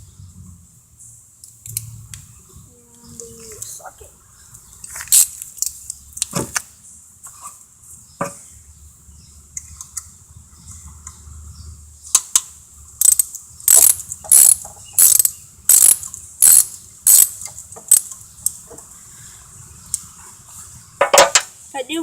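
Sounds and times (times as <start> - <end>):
ratchet wrench clicking: 5.1 - 5.8, 13.0 - 18.6.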